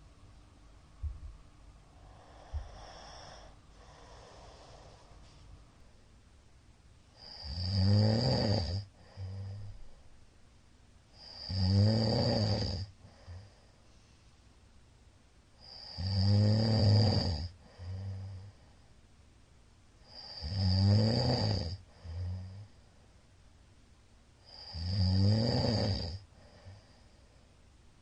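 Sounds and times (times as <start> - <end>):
man snoring loudly: 7.2 - 9.6, 11.2 - 12.9, 15.6 - 18.4, 20.1 - 22.6, 24.5 - 26.8.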